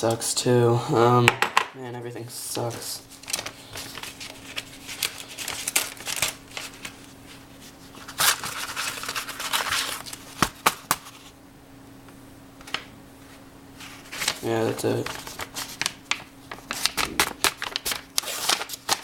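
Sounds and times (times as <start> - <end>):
paper envelope torn open: 3.2 - 7.0, 8.0 - 11.2, 13.9 - 19.0.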